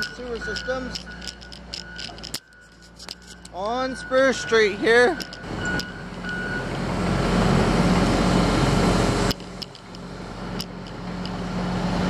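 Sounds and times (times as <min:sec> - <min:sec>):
sharp clicks: 0:00.0 - 0:03.7, 0:09.3 - 0:11.4
diesel engine running: 0:00.0 - 0:12.0.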